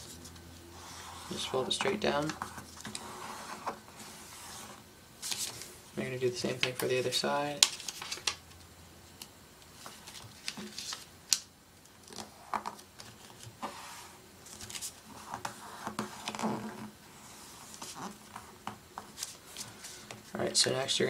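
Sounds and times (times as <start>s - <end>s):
paper rustling and crinkling: 1.3s - 5.7s, 7.6s - 8.4s, 9.8s - 11.4s, 14.4s - 16.9s, 17.6s - 20.4s.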